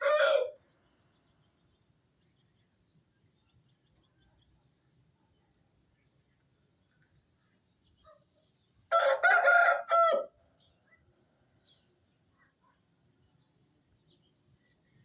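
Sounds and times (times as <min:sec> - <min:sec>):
rooster crowing: 0:00.0 - 0:00.6, 0:08.9 - 0:10.4
cricket trill: 0:00.0 - 0:15.0.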